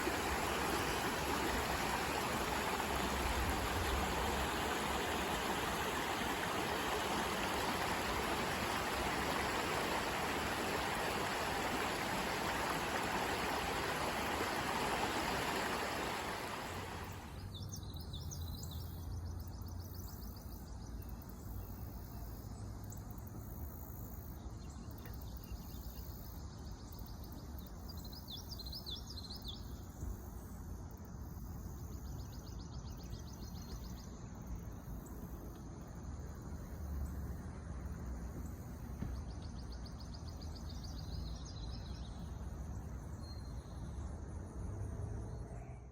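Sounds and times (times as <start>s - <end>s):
creek water flowing: 0.0s - 17.5s
woodland ambience: 0.0s - 18.7s.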